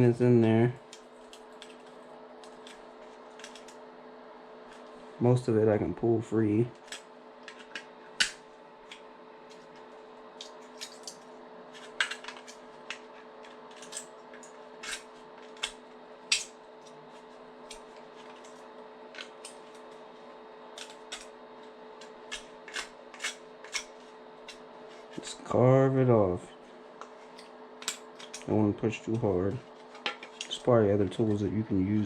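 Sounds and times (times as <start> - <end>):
faint steady hum: 0.0 - 32.0
knife scraping plastic: 22.3 - 25.2.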